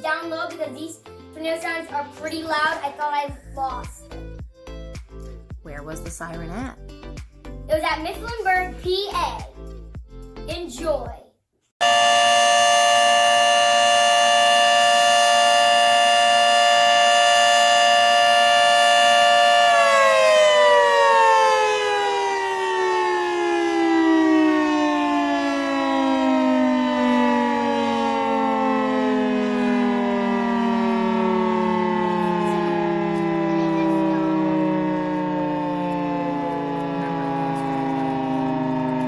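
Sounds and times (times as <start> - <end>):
warning siren winding down: 11.8 - 39.0.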